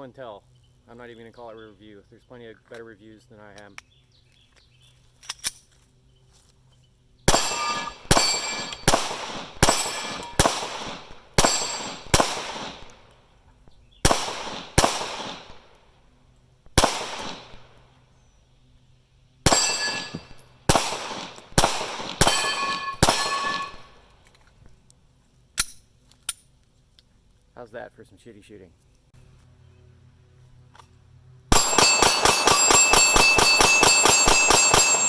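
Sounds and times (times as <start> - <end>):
metallic ringing: 7.3 - 10.5, 11.4 - 12.2, 19.5 - 20.6, 22.2 - 24.0, 31.5 - 35.0
pistol shots: 7.3 - 13.2, 14.0 - 15.8, 16.8 - 17.8, 19.5 - 24.1, 31.5 - 35.0.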